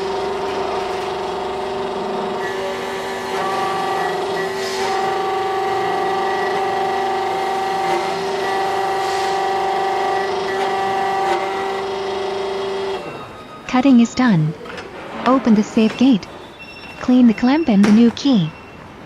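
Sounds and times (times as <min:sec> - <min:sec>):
key-cutting machine whine: 0:00.0 - 0:13.7.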